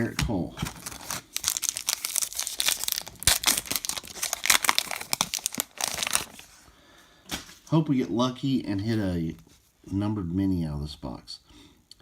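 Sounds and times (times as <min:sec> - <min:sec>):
wrapper tearing and crinkling: 0:00.6 - 0:06.5.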